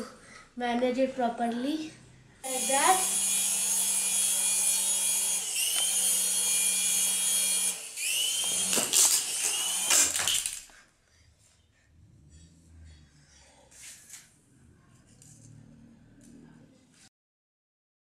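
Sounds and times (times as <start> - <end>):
toy helicopter motor whine: 2.4 - 10.7.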